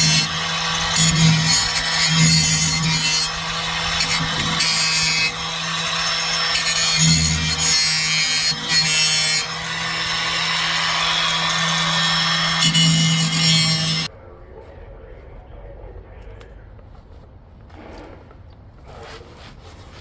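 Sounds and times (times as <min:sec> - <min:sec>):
power tool running: 0:00.0 - 0:14.1
rasping bursts: 0:00.0 - 0:14.1.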